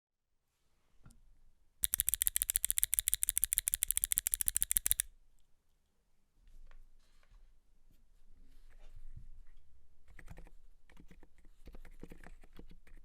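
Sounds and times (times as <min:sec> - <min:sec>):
fast typing on mechanical keyboard: 0:01.8 - 0:05.1.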